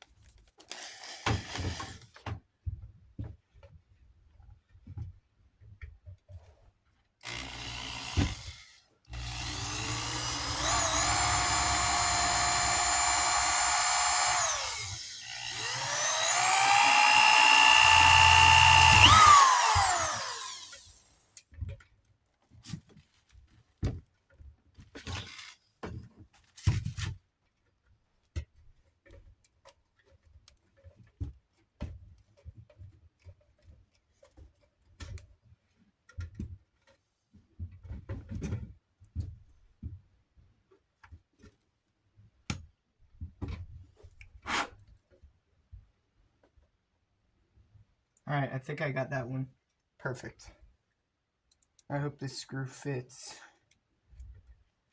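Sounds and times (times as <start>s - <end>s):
power drill whining: 0.7s - 2.0s, 7.2s - 21.2s.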